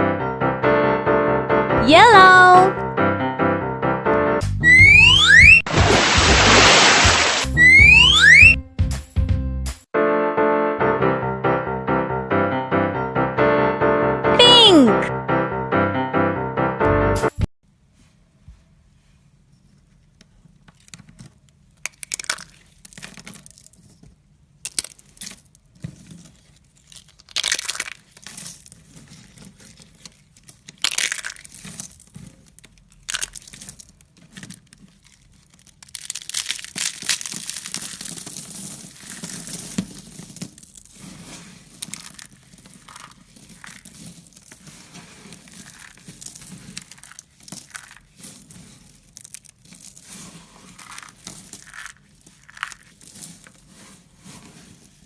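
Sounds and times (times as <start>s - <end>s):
crinkling and crushing: 20.5s - 55.0s.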